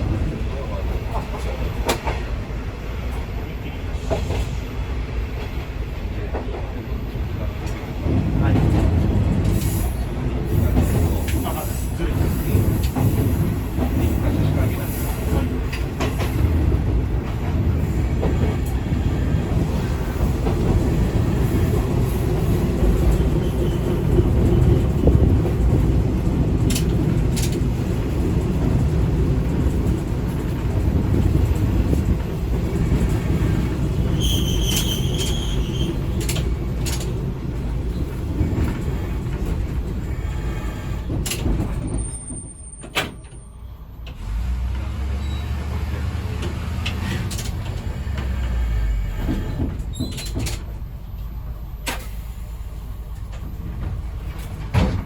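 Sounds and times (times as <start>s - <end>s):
diesel railcar rumbling: 0.0s - 55.0s
high-pitched wheel squeal: 34.1s - 36.0s, 45.2s - 45.7s.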